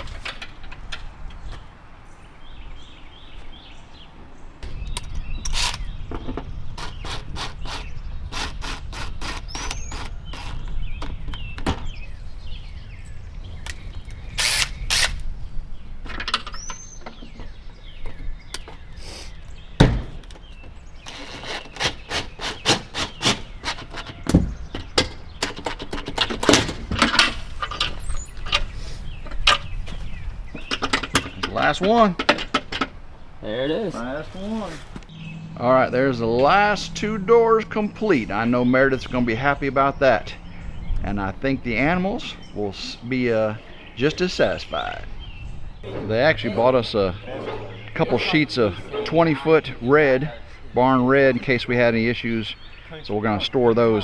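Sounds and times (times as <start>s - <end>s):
metal knocks and clicks: 0.0s - 1.7s, 4.6s - 12.0s, 16.0s - 18.9s, 19.8s - 33.0s
short squeaks: 4.6s - 12.2s, 16.4s - 26.6s.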